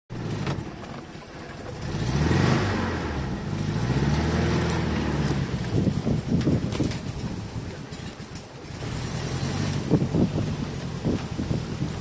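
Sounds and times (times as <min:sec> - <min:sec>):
car engine revving: 0:00.1 - 0:06.0, 0:08.7 - 0:11.7.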